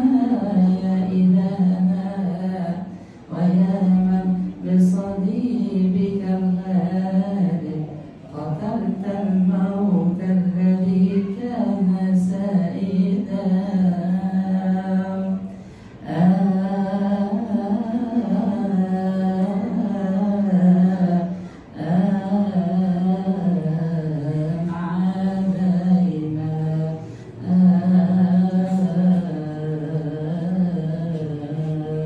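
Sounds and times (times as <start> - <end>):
man chanting unaccompanied: 0.0 - 32.0.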